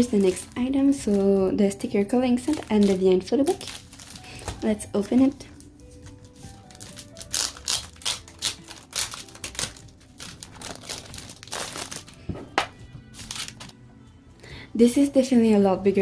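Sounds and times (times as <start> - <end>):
faint background music: 0.0 - 16.0
packaging crinkling: 2.4 - 13.8.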